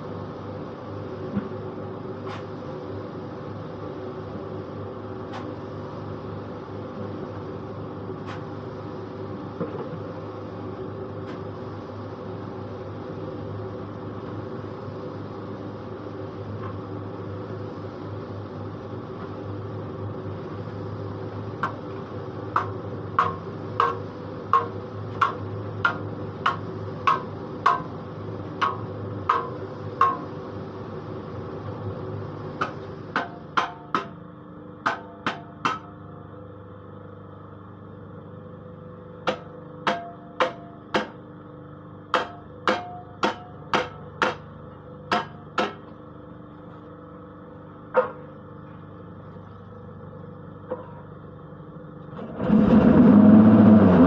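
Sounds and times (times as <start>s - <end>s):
sharp metallic knocks with ringing: 28.6s - 30.3s, 39.3s - 41.2s, 42.2s - 44.4s
machine motor hum: 46.6s - 54.0s.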